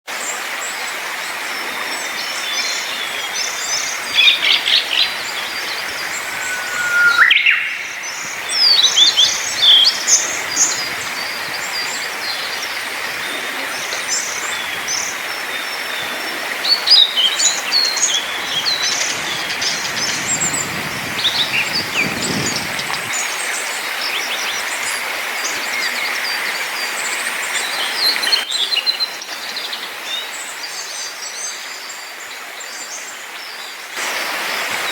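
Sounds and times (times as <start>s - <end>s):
steady background hiss: 0.7s - 13.5s
songbirds chirping and singing: 2.6s - 10.9s
short rising whistle: 5.3s - 9.0s.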